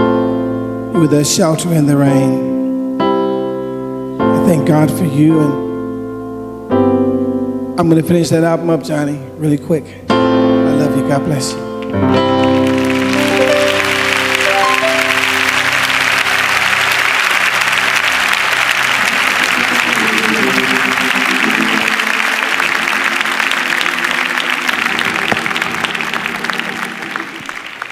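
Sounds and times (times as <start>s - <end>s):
held instrument chords: 11.8s - 25.0s
audience applauding: 11.8s - 27.9s.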